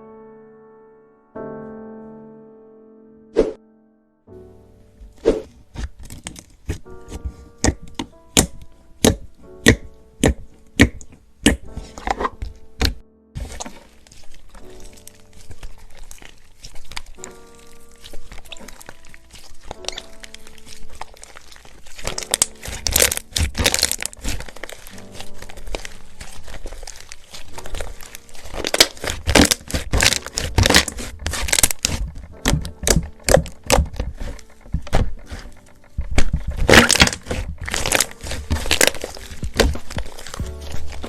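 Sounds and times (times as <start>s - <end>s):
quiet jazz music: 4.2s - 41.0s
slime crackling and popping: 5.1s - 41.0s.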